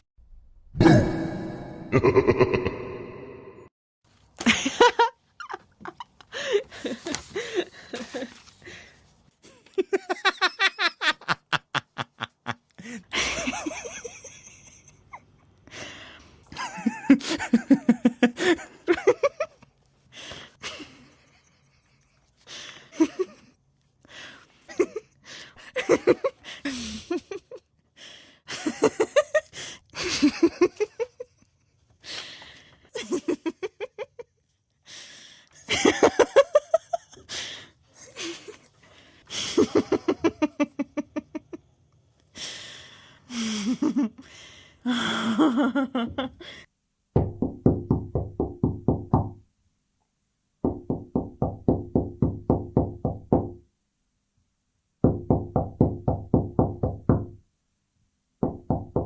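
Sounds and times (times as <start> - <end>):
fast knocking beat over low tone: 47.2 - 49.4, 50.6 - 53.6, 55.0 - 57.4, 58.4 - 59.0.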